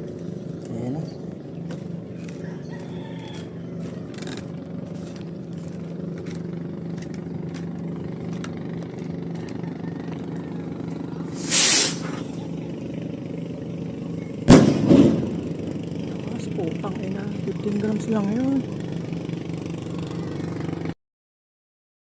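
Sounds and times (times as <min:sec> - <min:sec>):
low engine hum: 0:00.0 - 0:21.0
skyrocket firing whoosh: 0:11.4 - 0:12.3, 0:14.5 - 0:15.6.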